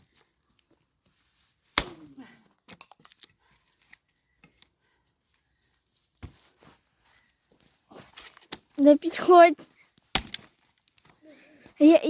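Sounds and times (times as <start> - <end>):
axe splitting firewood: 1.8 - 2.0, 10.1 - 10.6.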